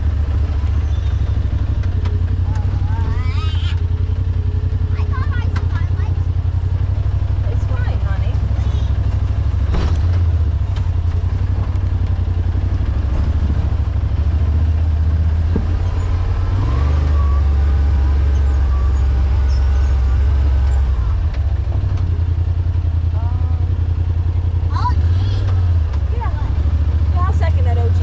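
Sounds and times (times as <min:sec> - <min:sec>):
utv engine running: 0:00.0 - 0:28.0.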